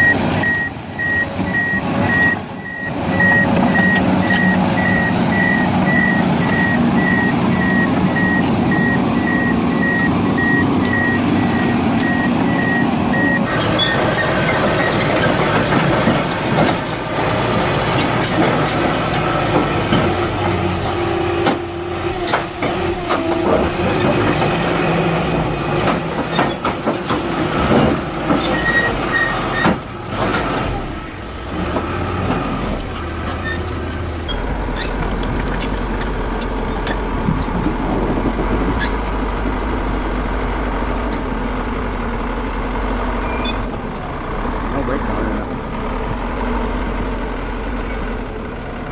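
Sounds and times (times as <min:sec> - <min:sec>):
heavy machinery engines running: 0:00.0 - 0:48.9
knocks and clanks: 0:13.5 - 0:20.6, 0:21.4 - 0:24.6, 0:25.7 - 0:30.7.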